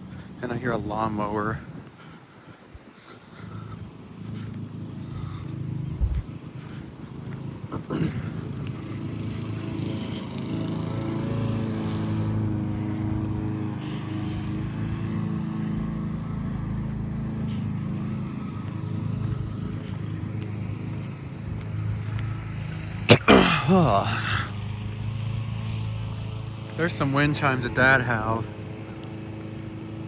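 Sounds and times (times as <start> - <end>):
lawn mower engine running: 7.1 - 22.9.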